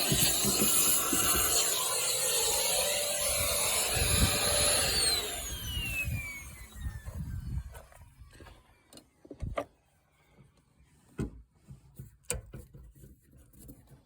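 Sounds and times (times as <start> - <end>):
electric fuel pump whirring: 0.0 - 9.6.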